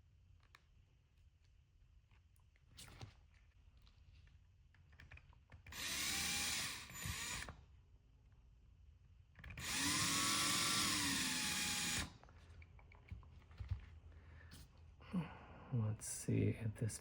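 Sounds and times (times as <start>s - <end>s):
small power drill whining: 5.7s - 7.6s, 9.4s - 12.2s.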